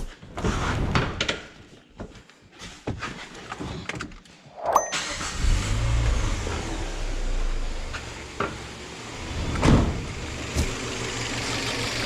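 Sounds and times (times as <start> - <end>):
car engine starting and idling: 4.9 - 12.0.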